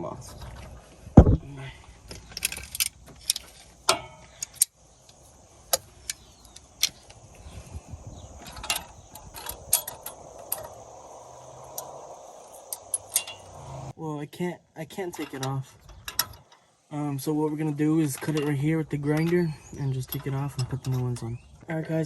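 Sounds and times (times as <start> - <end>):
hand tools clinking on metal: 2.2 - 7.2, 12.6 - 13.8, 18.0 - 21.4.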